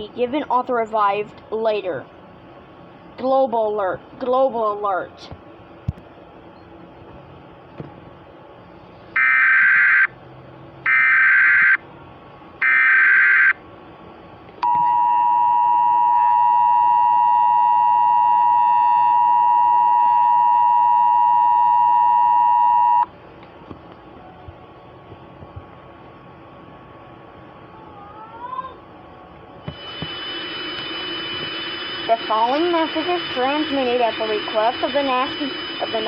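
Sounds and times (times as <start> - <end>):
digital data tone bursts: 29.7 - 36.0.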